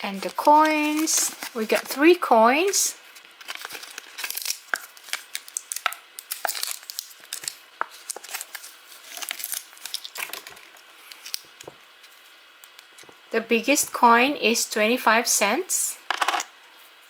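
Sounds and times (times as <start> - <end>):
plastic packaging crinkling: 0.0 - 13.1.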